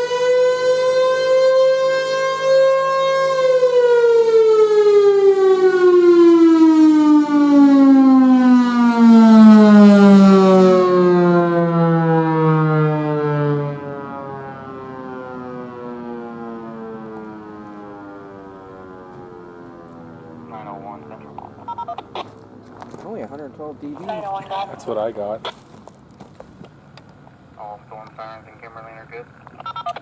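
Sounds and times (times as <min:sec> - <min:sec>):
siren winding down: 0:00.0 - 0:22.3.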